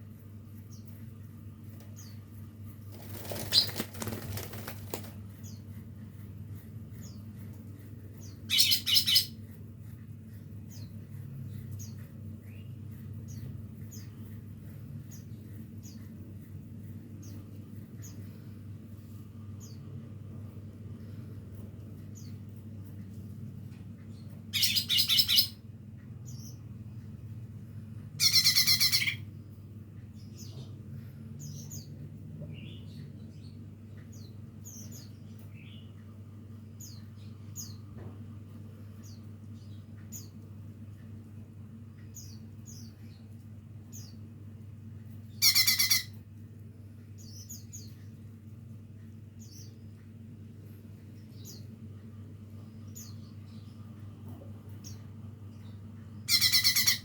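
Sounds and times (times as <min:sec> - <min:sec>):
steady low hum: 0:00.0 - 0:57.0
loud harsh bird calls: 0:45.4 - 0:46.2, 0:56.3 - 0:57.0.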